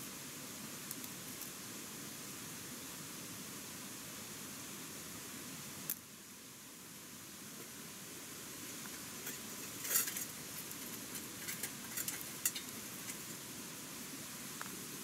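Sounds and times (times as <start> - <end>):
steady hiss: 0.0 - 15.0
light clicks and clinks: 8.9 - 13.3.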